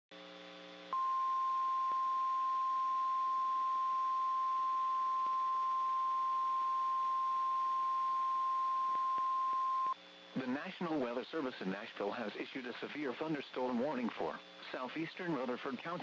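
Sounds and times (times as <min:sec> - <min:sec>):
quiet buzzy tone: 0:00.2 - 0:12.4
steady warning alarm tone: 0:01.0 - 0:10.0.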